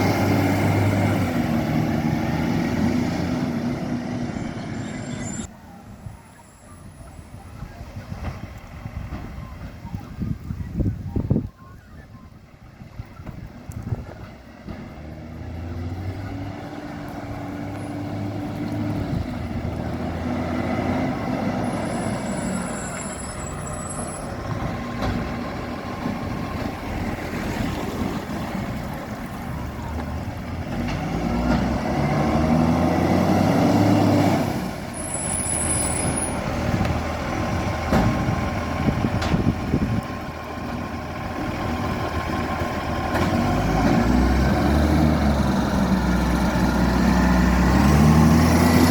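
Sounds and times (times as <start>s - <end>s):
diesel engine revving: 0.0s - 5.5s, 13.4s - 48.9s
short high-pitched squeals: 21.6s - 24.4s, 35.0s - 36.4s.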